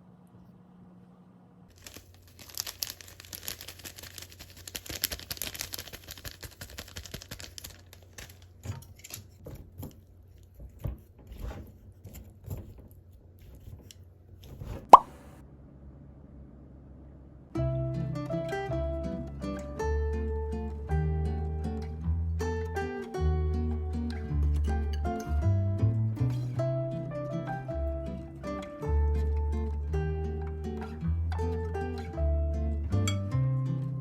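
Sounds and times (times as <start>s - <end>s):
packaging crinkling and tearing: 1.7s - 9.4s
light taps and rustles: 8.1s - 14.9s.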